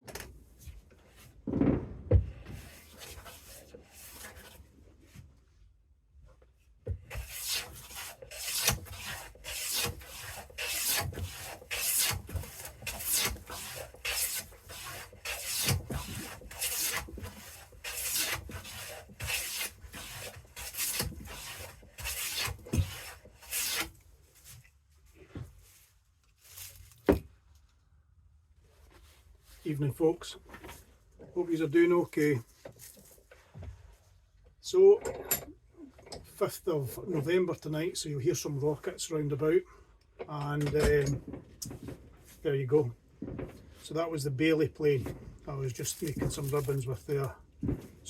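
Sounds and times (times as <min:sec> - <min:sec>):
dull thumps: 0:01.4 - 0:02.7, 0:47.6 - 0:48.0
hand plane shaving wood: 0:02.6 - 0:04.6, 0:07.1 - 0:24.0, 0:45.8 - 0:47.3.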